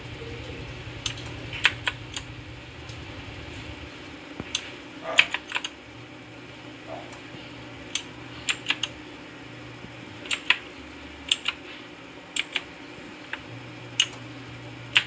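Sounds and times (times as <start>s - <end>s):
mechanical keyboard keystrokes: 1.0s - 2.3s, 4.4s - 5.7s, 7.9s - 9.0s, 10.2s - 10.6s, 11.3s - 11.6s, 12.3s - 12.7s, 13.3s - 14.2s.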